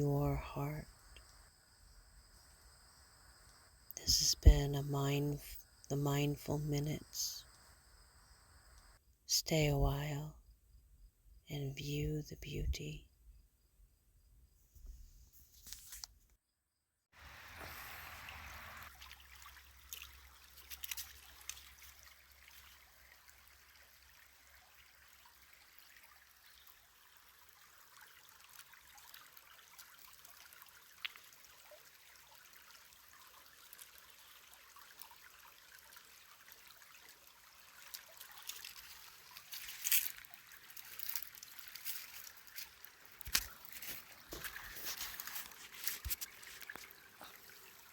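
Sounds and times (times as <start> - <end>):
steady water-like hiss: 17.2 - 47.9
light clicks and crackles: 19.9 - 21.9, 37.9 - 47.4.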